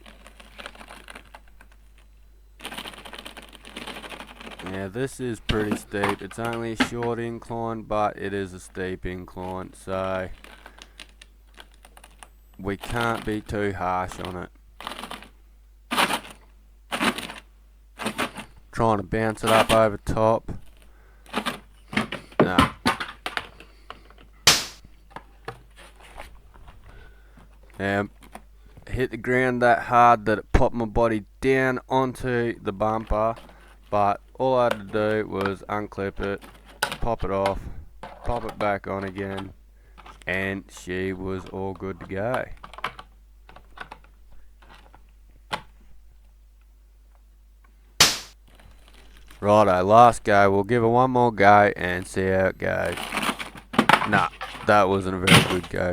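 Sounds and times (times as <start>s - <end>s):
toy car thumping on ground: 24.4s - 24.9s
sharp knock: 24.5s - 24.8s, 48.0s - 48.4s
loud short thump: 48.0s - 48.4s.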